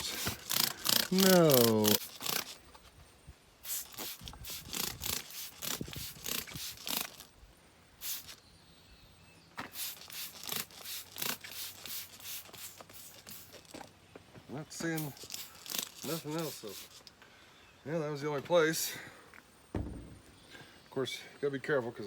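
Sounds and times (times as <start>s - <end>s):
spray bottle squirting: 0.0s - 2.6s, 3.6s - 7.3s, 8.0s - 8.4s, 9.6s - 13.9s, 14.8s - 17.1s.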